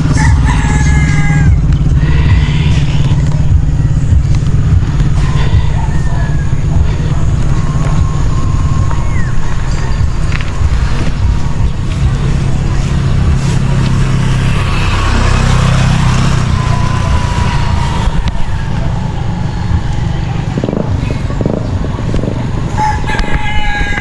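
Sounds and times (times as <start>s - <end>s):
rooster crowing: 0.0s - 3.0s, 5.1s - 7.3s, 22.7s - 24.0s
low rumble of bike riding: 0.0s - 24.0s
wind rush while cycling: 1.5s - 24.0s.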